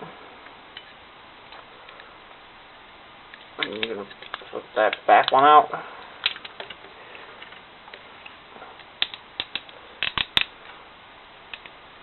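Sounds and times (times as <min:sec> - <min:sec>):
plastic toy parts clicking: 0:03.6 - 0:05.4, 0:06.2 - 0:06.8, 0:08.8 - 0:10.5.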